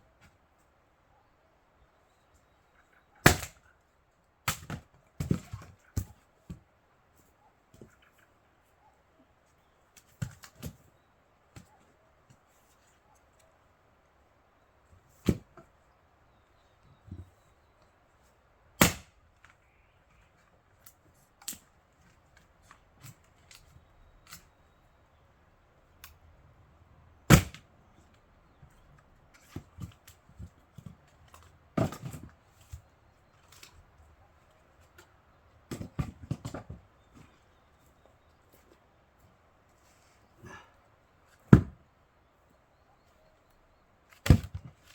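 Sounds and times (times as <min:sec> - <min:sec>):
axe splitting firewood: 0:03.2 - 0:03.6, 0:15.2 - 0:15.6, 0:18.8 - 0:19.2, 0:27.2 - 0:27.7, 0:29.4 - 0:32.9, 0:35.7 - 0:36.8, 0:41.4 - 0:41.8, 0:44.1 - 0:44.9.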